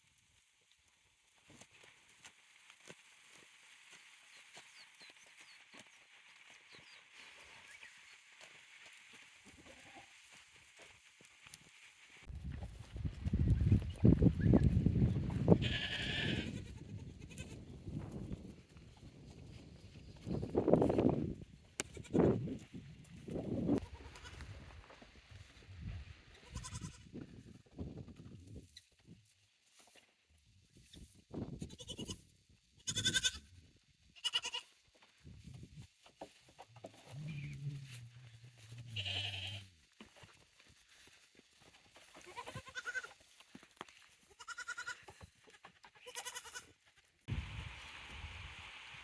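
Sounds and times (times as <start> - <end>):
goats bleating: 15.6 - 17.6, 32.8 - 33.5, 34.2 - 34.7, 37.0 - 39.7, 42.1 - 43.2, 44.3 - 46.7
steady hiss: 47.3 - 49.0.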